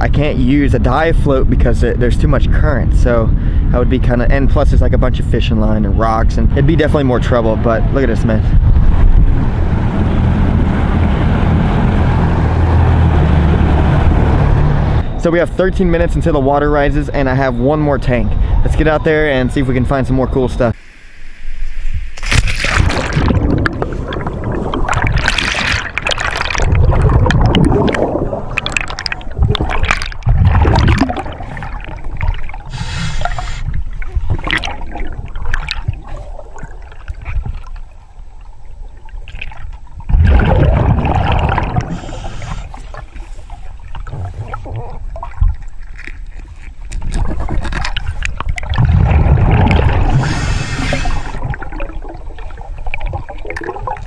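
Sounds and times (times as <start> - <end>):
river water gurgling and sloshing: 22.2 - 54.0.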